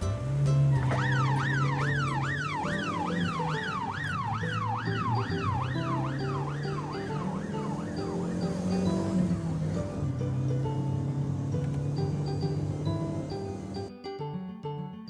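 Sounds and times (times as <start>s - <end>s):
background music: 0.0s - 15.0s
police siren yelping: 0.7s - 10.0s.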